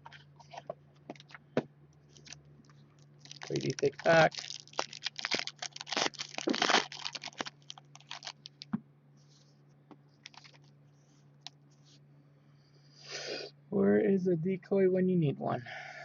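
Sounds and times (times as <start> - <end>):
faint steady hum: 0.0 - 16.0
wrapper tearing and crinkling: 2.1 - 2.4, 3.2 - 8.7, 10.2 - 10.6.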